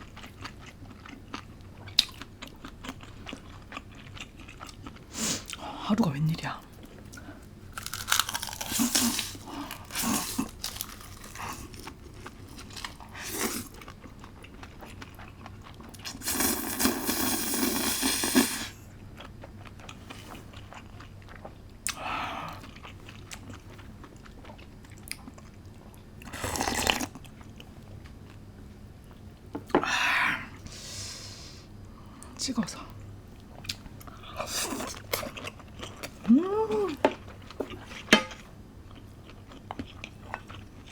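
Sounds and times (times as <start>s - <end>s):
chewing: 0.0s - 5.6s, 6.8s - 17.3s, 33.4s - 40.9s
crunching bites: 7.8s - 11.8s.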